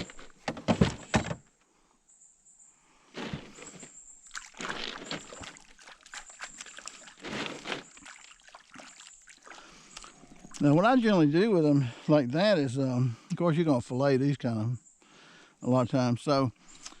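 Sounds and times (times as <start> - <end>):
water sloshing and splashing: 3.2 - 11.2.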